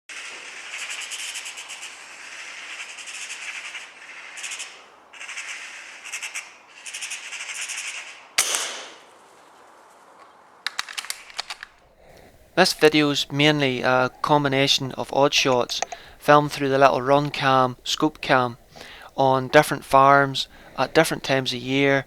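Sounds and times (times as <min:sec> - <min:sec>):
birds chattering: 0:00.6 - 0:08.3, 0:11.8 - 0:22.0
air rifle shot: 0:08.4 - 0:09.1.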